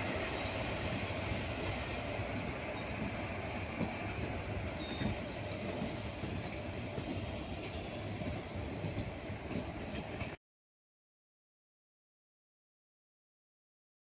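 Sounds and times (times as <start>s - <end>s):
train wheels rumbling on rail: 0.0s - 10.4s.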